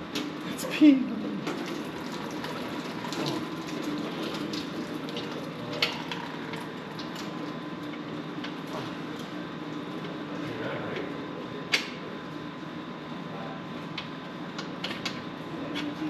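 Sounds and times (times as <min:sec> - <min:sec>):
fluid pouring and splattering: 0:01.4 - 0:07.4.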